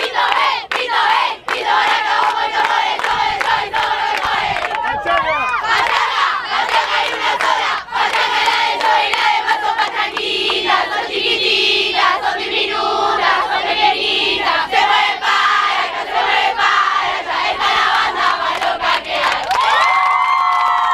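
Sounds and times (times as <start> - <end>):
group singing and chanting: 0.0 - 19.6
people shouting: 4.8 - 5.8.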